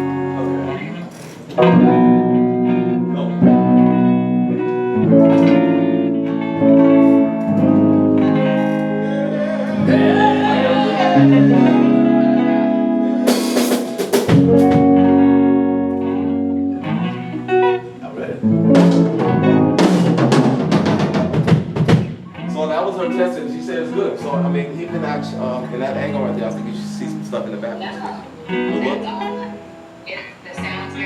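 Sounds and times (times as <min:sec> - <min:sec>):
guitar music: 0:00.0 - 0:31.0
sliding melodic line: 0:01.6 - 0:13.6.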